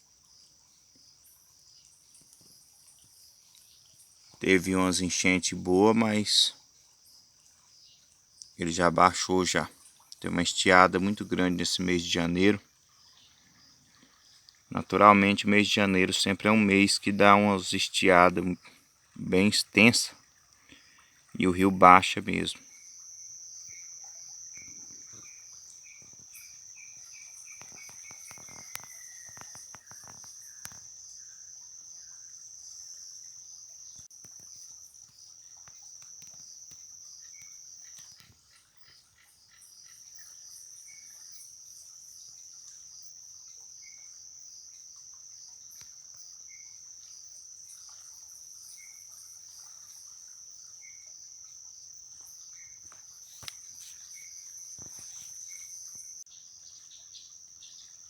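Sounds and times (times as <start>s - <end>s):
cricket trilling: 0.0s - 58.0s
bird calling: 23.6s - 31.4s.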